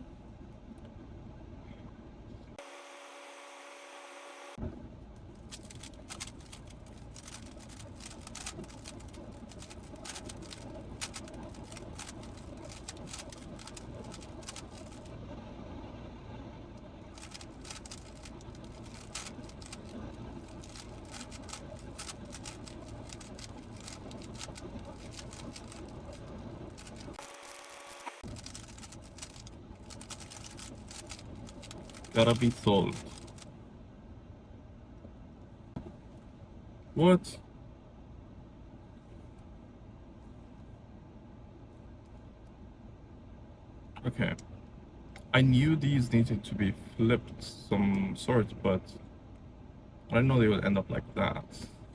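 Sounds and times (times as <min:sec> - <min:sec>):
low steady hum: 0:00.0 - 0:51.9
puzzle cube plastic clicks: 0:05.4 - 0:15.1, 0:17.2 - 0:33.5.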